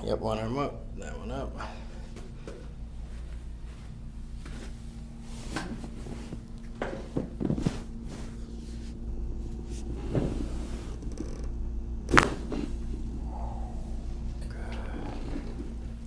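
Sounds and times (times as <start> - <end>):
steady low hum: 0.0 - 16.0
soft knocks and rustles on table: 5.4 - 8.4.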